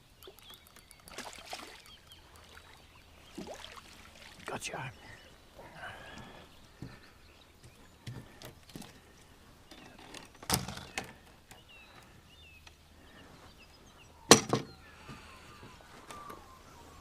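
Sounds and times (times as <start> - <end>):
faint bird chirps: 4.6 - 17.0.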